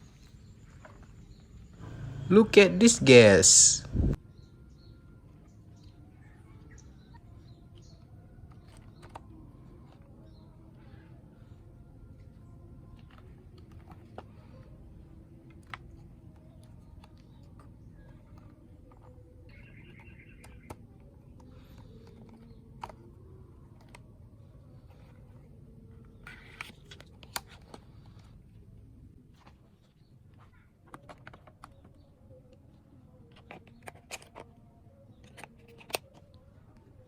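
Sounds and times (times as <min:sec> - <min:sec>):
low steady hum: 0:01.8 - 0:04.2.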